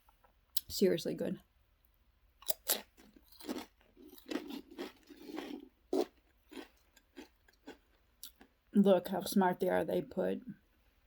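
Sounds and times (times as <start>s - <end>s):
crunching potato crisps: 2.4s - 8.5s.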